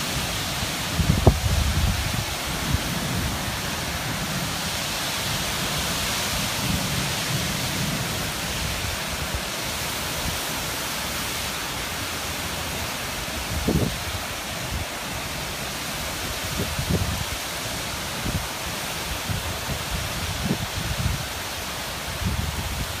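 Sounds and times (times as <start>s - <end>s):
steady rain: 0.0s - 23.0s.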